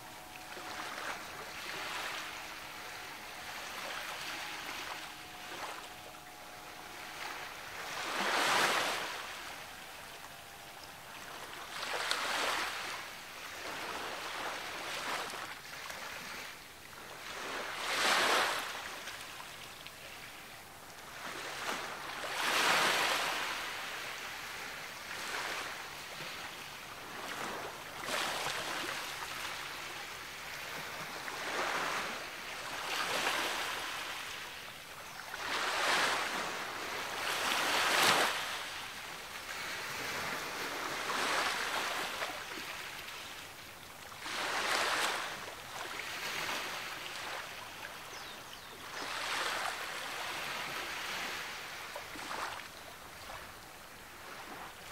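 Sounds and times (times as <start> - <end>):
ocean waves breaking: 0.0 - 10.5, 11.1 - 20.4.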